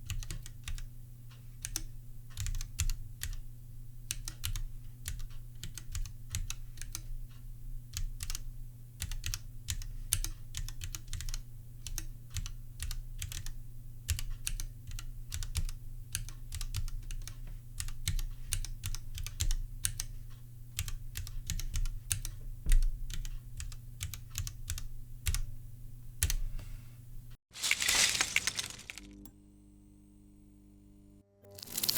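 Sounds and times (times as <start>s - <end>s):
mechanical keyboard typing: 0.1s - 0.8s, 2.4s - 3.4s, 7.9s - 8.4s, 9.0s - 20.1s.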